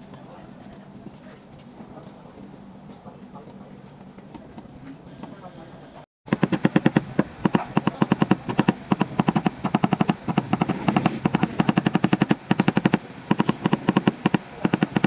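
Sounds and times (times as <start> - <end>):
hammer tapping on metal panel: 6.3 - 15.0.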